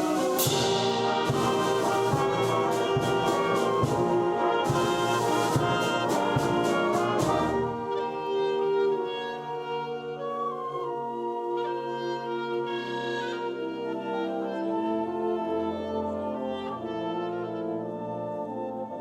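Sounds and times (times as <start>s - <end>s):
percussion strikes: 0.0s - 7.8s
concert band playing: 0.0s - 8.6s.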